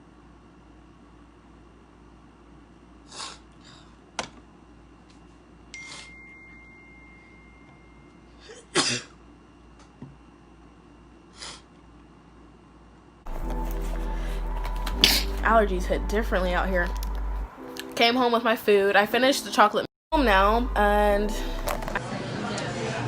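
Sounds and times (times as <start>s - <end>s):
woman sneezing: 8.5s - 9.1s.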